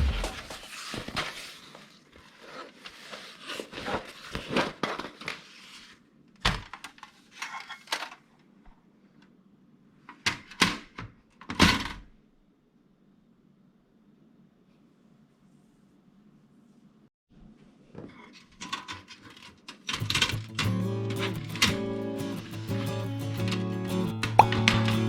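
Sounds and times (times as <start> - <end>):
thuds: 0.0 - 0.7.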